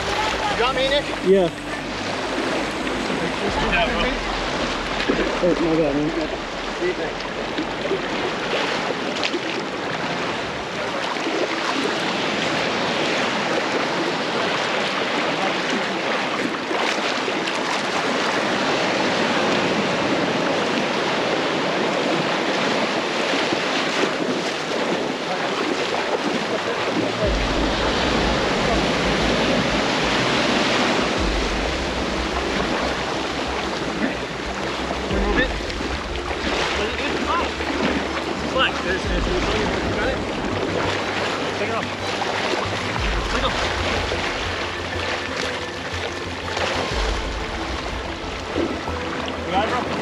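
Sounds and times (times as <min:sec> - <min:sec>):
surf washing onto beach: 0:00.0 - 0:50.0
wind buffeting microphone: 0:18.0 - 0:50.0.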